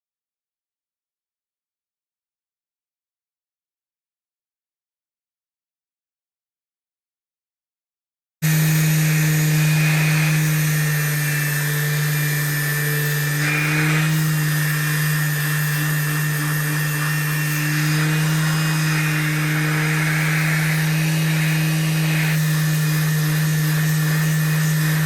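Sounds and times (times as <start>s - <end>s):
woodworking power tool running: 8.4s - 25.0s.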